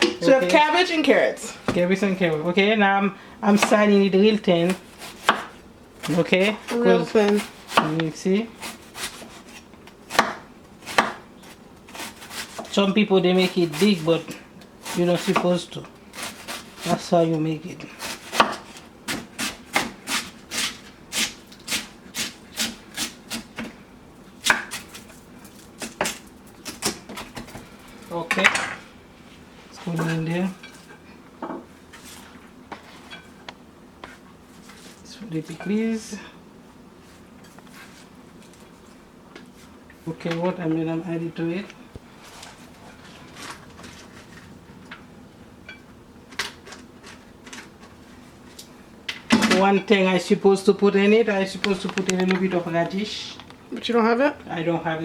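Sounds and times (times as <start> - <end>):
faint steady hum: 0.0 - 55.0
knife slicing vegetables: 4.6 - 17.1, 17.9 - 23.7, 24.4 - 27.6.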